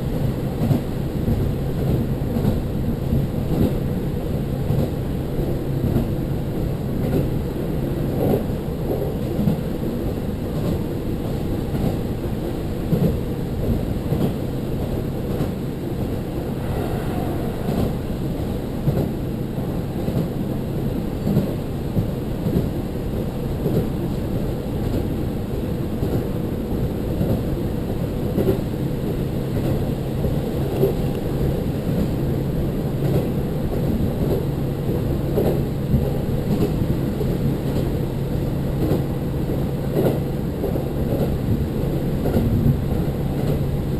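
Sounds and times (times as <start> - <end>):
train wheel rumble: 0.0 - 43.9
low engine drone: 15.8 - 19.7.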